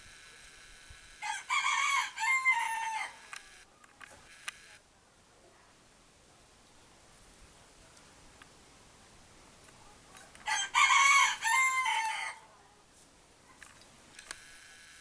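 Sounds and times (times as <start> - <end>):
rooster crowing: 1.2 - 3.4, 10.4 - 12.5.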